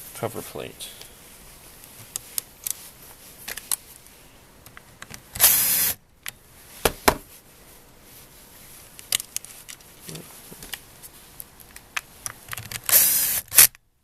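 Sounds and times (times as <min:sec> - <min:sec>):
electric screwdriver whirring: 0:05.4 - 0:06.0, 0:12.9 - 0:13.7.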